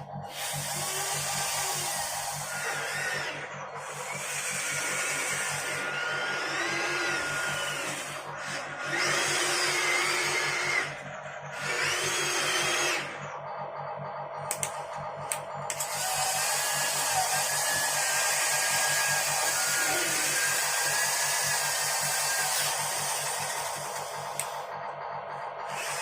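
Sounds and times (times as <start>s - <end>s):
electric motors whirring: 0.0s - 26.0s.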